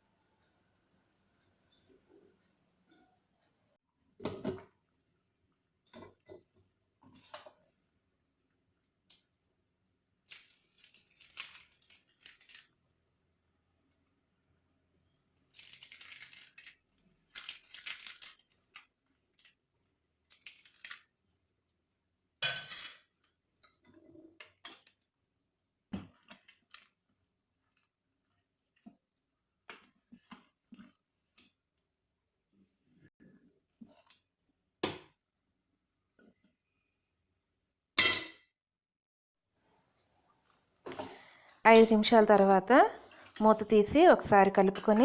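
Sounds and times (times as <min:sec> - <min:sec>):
pot and utensils clinking: 0:44.6 - 0:45.0.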